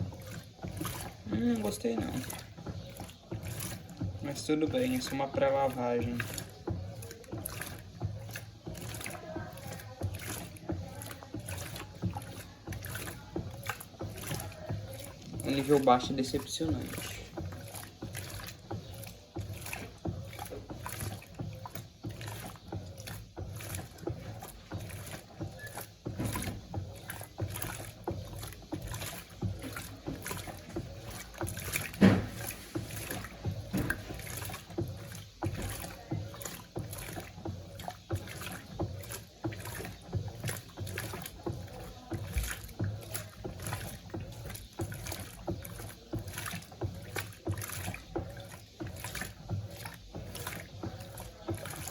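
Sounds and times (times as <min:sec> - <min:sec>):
washing machine knock: 0:00.0 - 0:51.9
washing machine sloshing water: 0:00.0 - 0:51.9.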